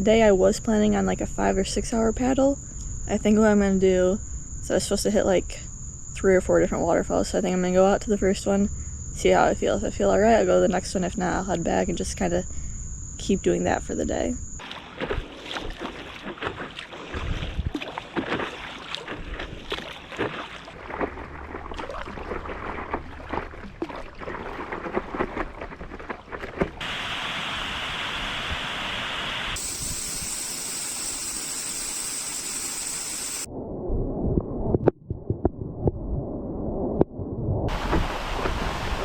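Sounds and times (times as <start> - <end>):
water splashing: 14.6 - 28.1, 37.7 - 39.0
falling water rushing: 26.8 - 29.7, 37.7 - 39.0.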